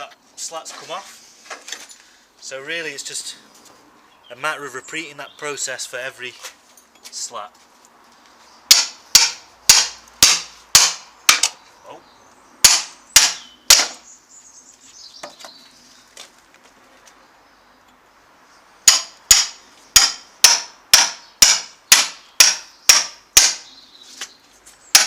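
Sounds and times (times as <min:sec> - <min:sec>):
hammer striking steel chisel: 0:08.7 - 0:11.6, 0:12.6 - 0:14.0, 0:18.9 - 0:23.6.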